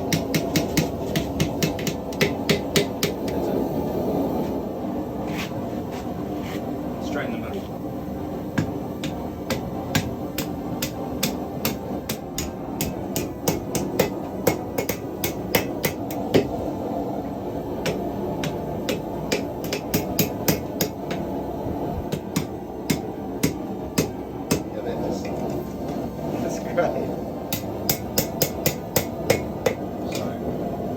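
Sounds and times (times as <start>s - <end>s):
hammer striking metal on anvil: 0.0s - 3.4s, 8.6s - 16.5s, 17.8s - 21.3s, 22.1s - 25.5s, 27.5s - 30.4s
steady low hum: 0.0s - 30.9s.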